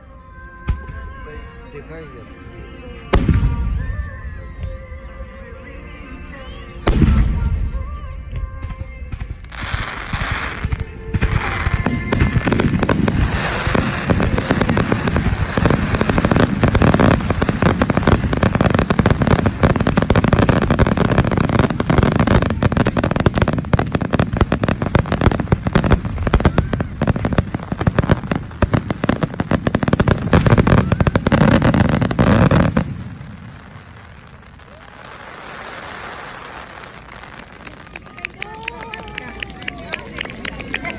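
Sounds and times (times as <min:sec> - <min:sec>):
fireworks bangs and crackles: 0:03.1 - 0:04.9, 0:06.8 - 0:40.9.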